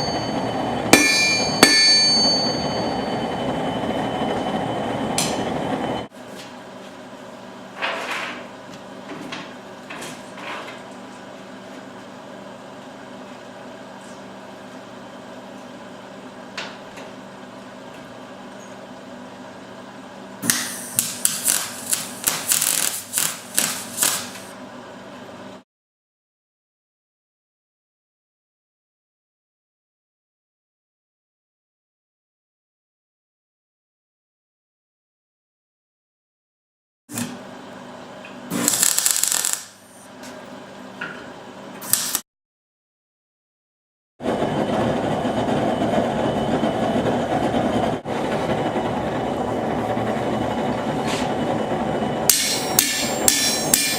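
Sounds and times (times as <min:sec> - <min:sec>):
steady hum: 0:00.0 - 0:10.5, 0:44.2 - 0:53.9
hammer strikes on steel: 0:01.0 - 0:02.7, 0:20.4 - 0:21.5, 0:52.3 - 0:53.9.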